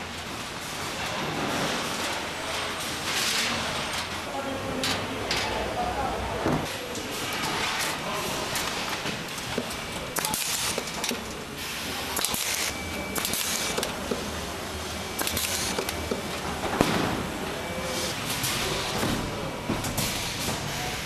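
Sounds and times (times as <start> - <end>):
factory din: 4.7 - 21.0.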